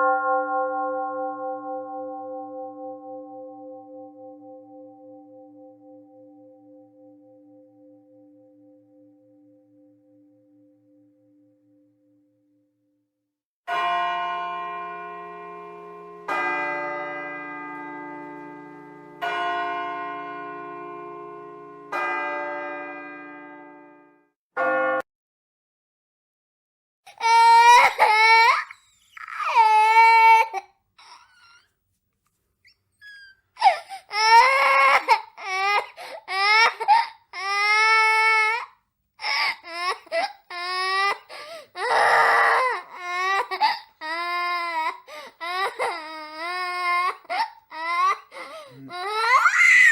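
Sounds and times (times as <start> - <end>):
baby crying: 27.1 - 31.7, 33.0 - 49.9.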